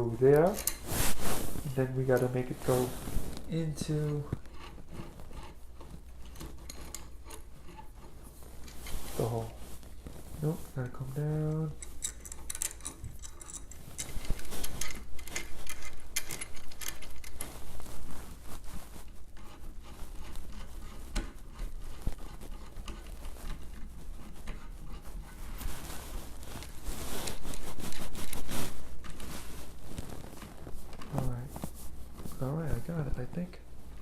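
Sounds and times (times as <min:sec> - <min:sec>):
small metal parts clicking and scraping: 0:00.3 - 0:00.9, 0:03.7 - 0:09.6, 0:10.8 - 0:17.7.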